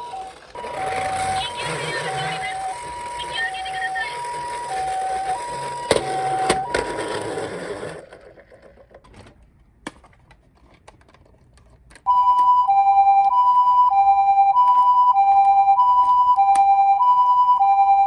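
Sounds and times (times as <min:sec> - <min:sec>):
toy siren two-tone: 0:00.0 - 0:07.4, 0:12.1 - 0:18.0.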